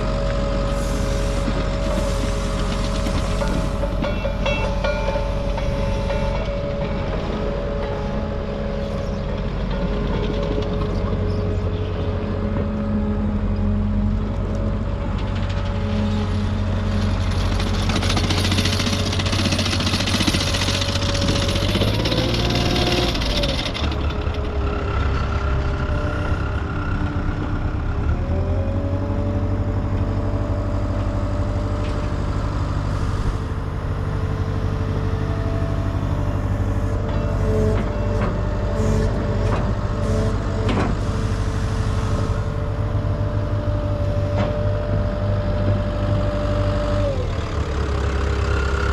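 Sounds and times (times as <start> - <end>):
diesel engine running: 0.0 - 48.9
rushing hiss: 0.7 - 3.8.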